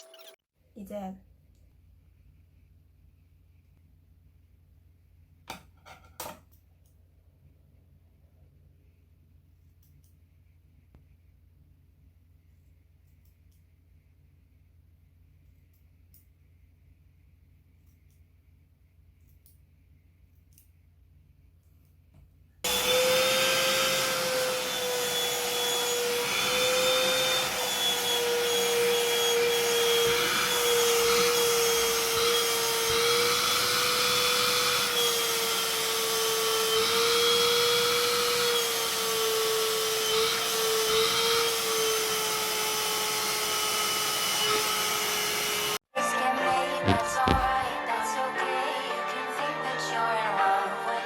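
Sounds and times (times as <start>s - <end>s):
electric fan motor whine: 22.7s - 45.8s.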